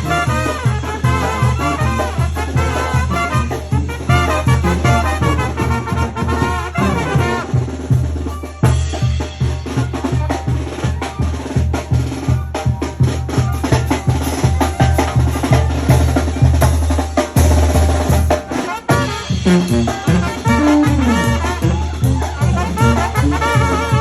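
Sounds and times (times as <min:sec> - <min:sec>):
drum kit beat: 0:00.0 - 0:24.0
heavy bass: 0:19.1 - 0:24.0.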